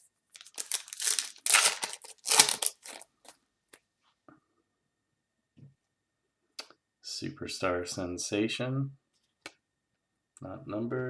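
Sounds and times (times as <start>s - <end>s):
foil wrapper tearing and crinkling: 0.3s - 3.4s.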